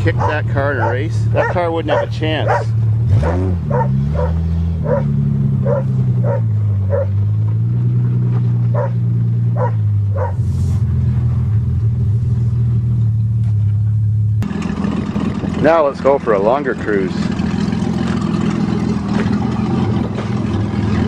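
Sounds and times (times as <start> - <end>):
car engine running: 0.0 - 21.0
dog yipping: 0.2 - 7.2, 8.7 - 9.0, 9.6 - 10.4.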